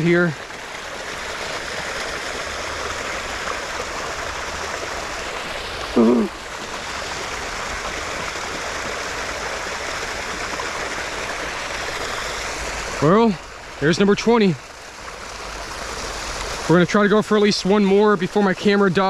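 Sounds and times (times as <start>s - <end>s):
creek water over rocks: 0.0s - 19.0s
person humming: 6.0s - 6.4s.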